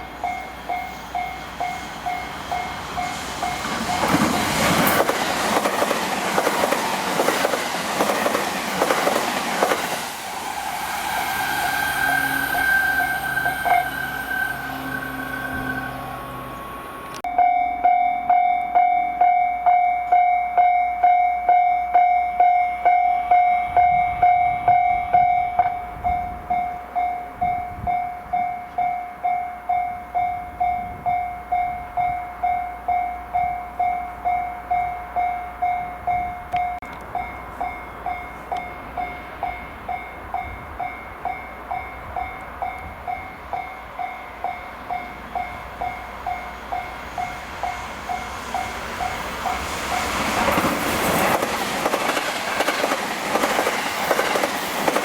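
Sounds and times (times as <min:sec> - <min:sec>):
level-crossing warning bell: 0:00.0 - 0:05.1, 0:12.0 - 0:50.6.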